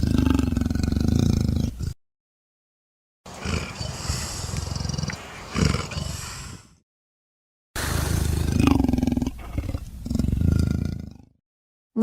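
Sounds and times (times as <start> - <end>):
big cat growling: 0.0 - 2.0, 3.3 - 6.8, 7.8 - 11.4.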